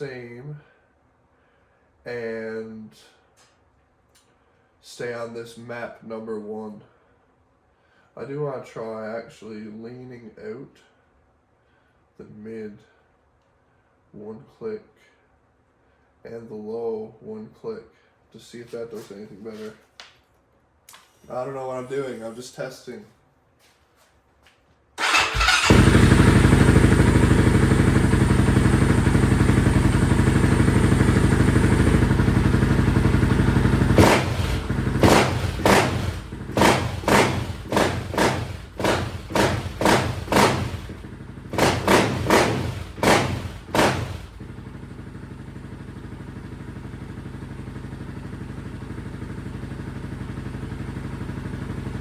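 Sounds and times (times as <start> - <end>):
atv engine idling and revving: 25.0 - 52.0.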